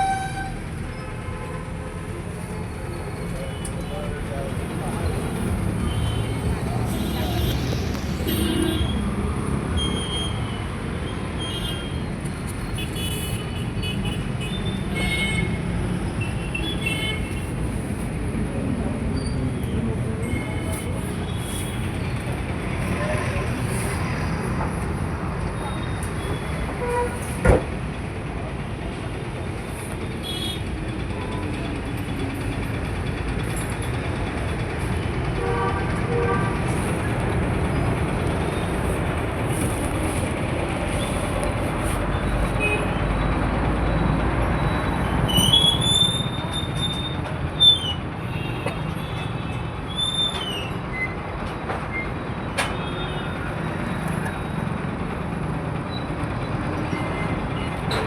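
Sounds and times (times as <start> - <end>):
road traffic rumble: 0.0 - 58.0
vehicle horns: 35.4 - 36.7.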